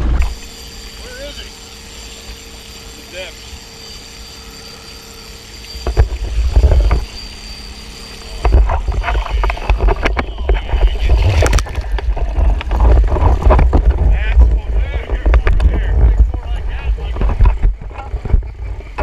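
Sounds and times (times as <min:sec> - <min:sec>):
wind buffeting microphone: 0:08.3 - 0:19.0.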